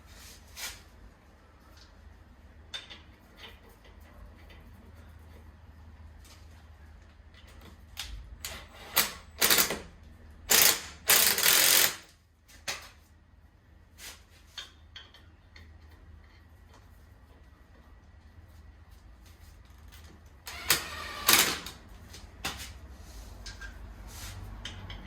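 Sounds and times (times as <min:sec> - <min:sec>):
ratchet wrench clicking: 0:08.9 - 0:09.8, 0:10.5 - 0:12.1.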